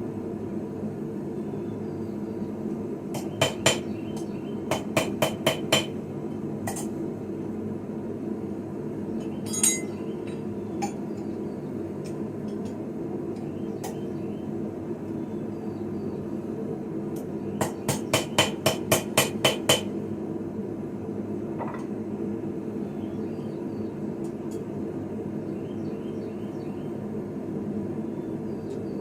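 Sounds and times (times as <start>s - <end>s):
hammer striking steel on anvil: 3.2s - 3.9s, 4.7s - 6.0s, 9.5s - 10.0s, 17.6s - 19.9s.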